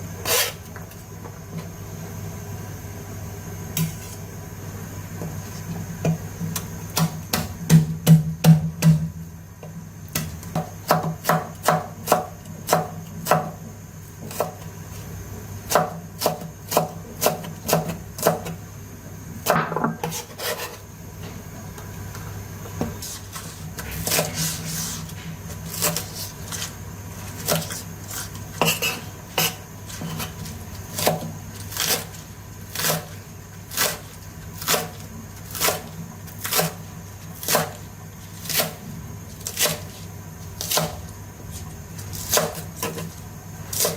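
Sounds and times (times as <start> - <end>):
knife chopping on cutting board: 10.2 - 13.5.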